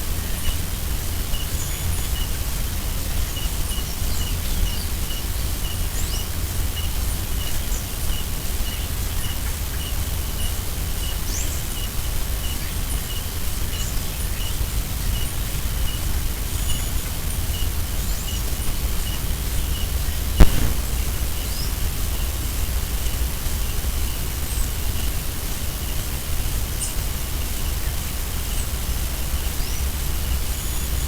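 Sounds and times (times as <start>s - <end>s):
steady low rumble: 20.4s - 21.7s.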